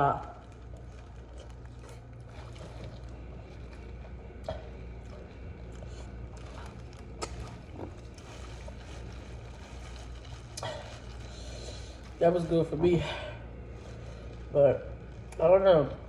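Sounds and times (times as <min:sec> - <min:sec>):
chewing and eating: 0:00.0 - 0:15.5
steady low hum: 0:00.0 - 0:16.0
mouth smacks: 0:04.4 - 0:08.4.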